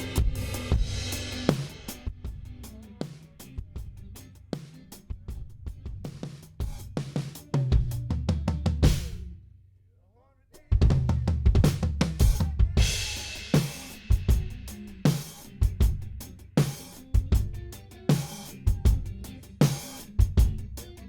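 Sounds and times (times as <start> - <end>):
bass line: 0.0 - 4.5, 7.5 - 9.5, 10.7 - 21.0
drum kit playing: 0.0 - 9.4, 10.6 - 21.0.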